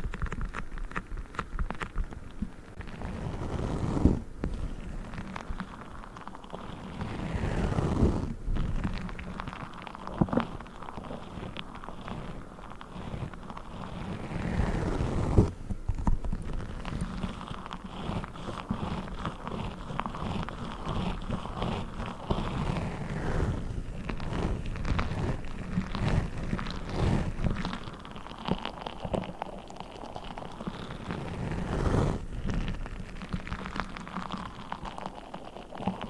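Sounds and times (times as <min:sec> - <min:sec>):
water-gel beads crackling and squelching: 0:00.0 - 0:36.0.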